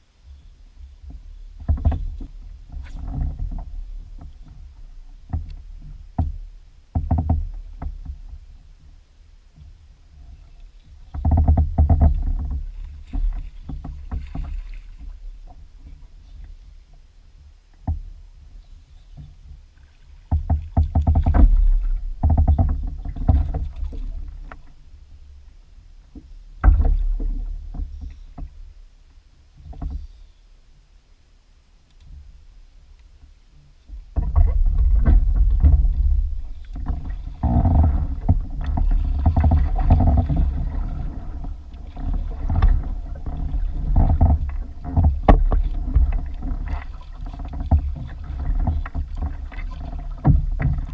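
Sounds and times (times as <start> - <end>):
knocks from kayak hull and fittings: 1.0 - 8.5, 11.0 - 16.5, 17.8 - 18.2, 19.1 - 24.8, 26.1 - 28.7, 29.6 - 30.2, 33.9 - 50.9
low rumble: 34.0 - 50.9.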